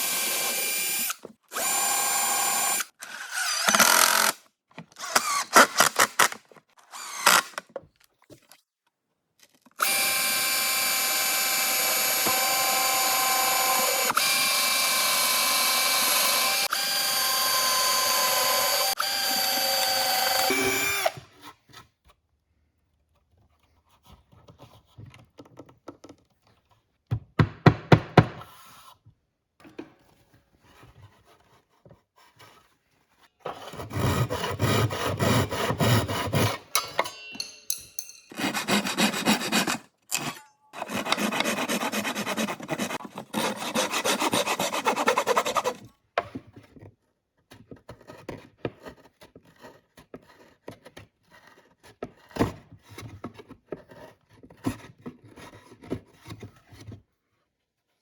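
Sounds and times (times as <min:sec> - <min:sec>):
electric power drill running: 0:00.0 - 0:04.3, 0:06.9 - 0:07.6, 0:09.8 - 0:21.2
sawing-like scraping rub: 0:38.2 - 0:46.0.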